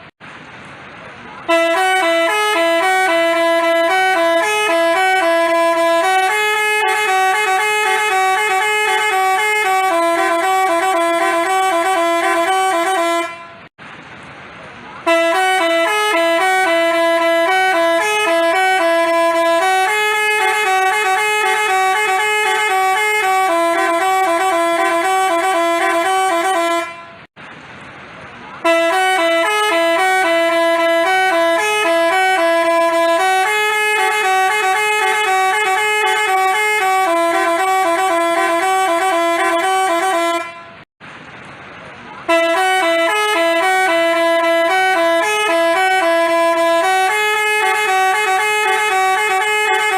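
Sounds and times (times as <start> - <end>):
multi-tone bus horn tune: 1.4 - 13.7, 15.0 - 27.4, 28.6 - 40.9, 42.2 - 49.9.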